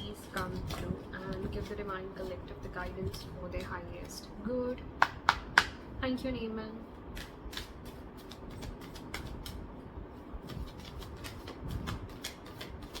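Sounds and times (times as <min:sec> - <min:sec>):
cards being shuffled: 0:00.0 - 0:04.3, 0:07.1 - 0:09.8, 0:10.4 - 0:13.0
card slaps: 0:05.0 - 0:05.8, 0:07.1 - 0:09.6.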